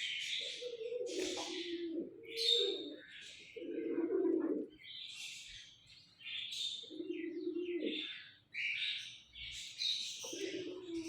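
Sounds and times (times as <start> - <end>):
pigeon cooing: 0.0 - 4.8, 6.8 - 8.2, 10.2 - 11.0
small birds chirping: 0.0 - 11.0.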